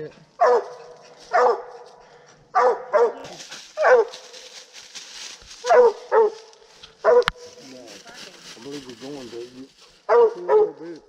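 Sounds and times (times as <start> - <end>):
dog barking loudly: 0.4 - 1.9, 2.5 - 4.3, 5.6 - 7.4, 10.0 - 10.8.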